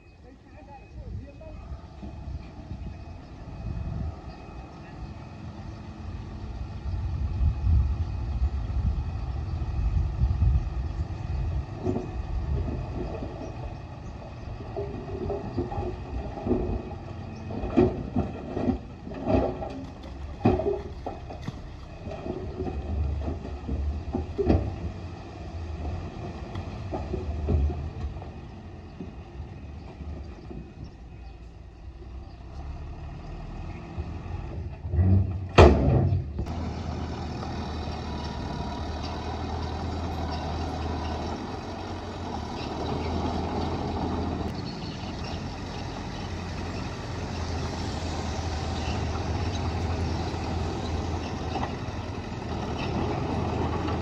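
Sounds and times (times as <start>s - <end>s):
low engine hum: 0.0s - 54.0s
clanks and knocks: 14.6s - 25.0s, 25.8s - 29.2s.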